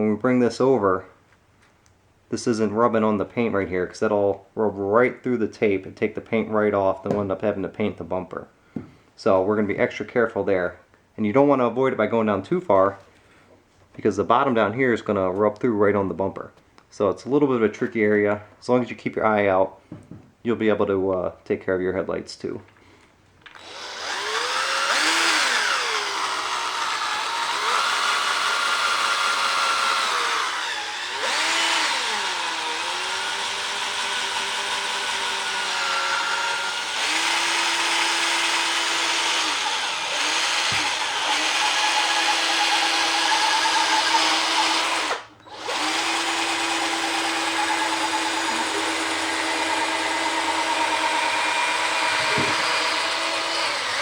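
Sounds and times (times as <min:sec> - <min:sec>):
electric polisher motor whine: 0:23.6 - 0:33.1, 0:47.3 - 0:54.0.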